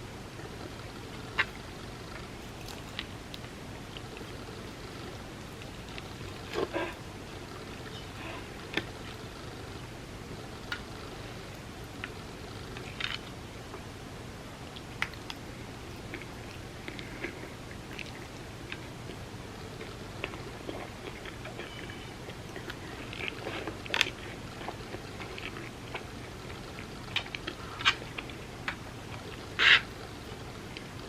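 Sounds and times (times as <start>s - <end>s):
person chewing and biting food: 1.2s - 7.0s.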